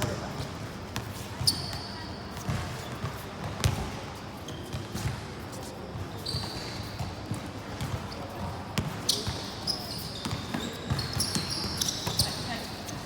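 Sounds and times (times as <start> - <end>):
sneaker squeak: 1.0 - 13.0
basketball bouncing on court: 3.4 - 4.0, 10.2 - 12.4.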